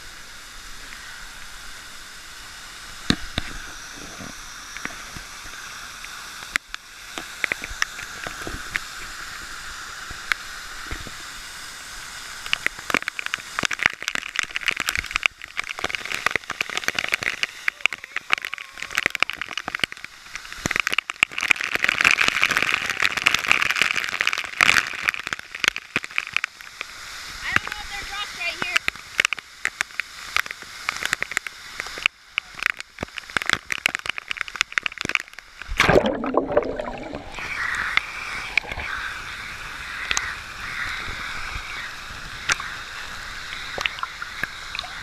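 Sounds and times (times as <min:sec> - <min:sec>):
waterfall rushing: 0:16.0 - 0:19.7.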